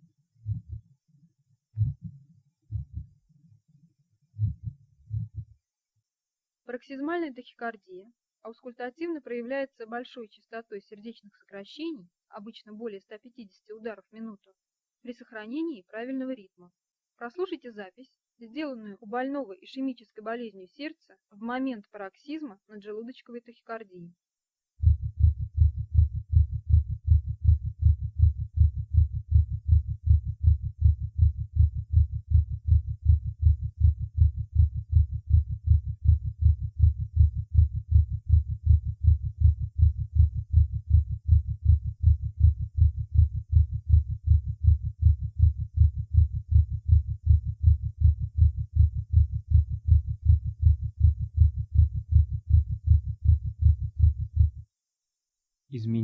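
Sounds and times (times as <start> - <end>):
fast heartbeat through stethoscope: 0.4 - 0.9, 1.8 - 3.2, 4.4 - 5.6, 24.8 - 54.6.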